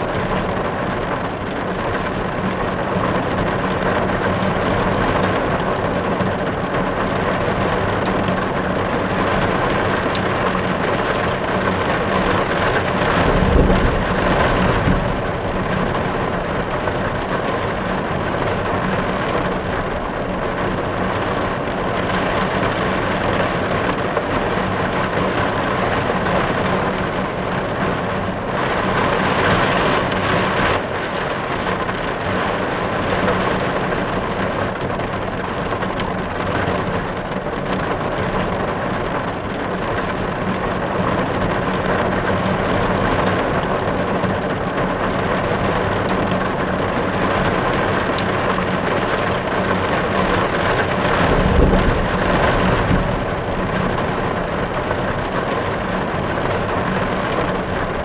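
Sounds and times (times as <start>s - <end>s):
rain on car roof: 0.0s - 58.0s
low rumble: 12.5s - 18.0s, 51.0s - 55.8s.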